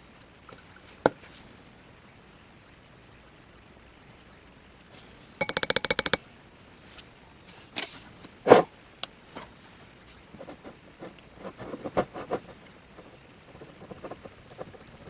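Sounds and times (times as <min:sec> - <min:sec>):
small containers clicking: 0:05.4 - 0:06.2.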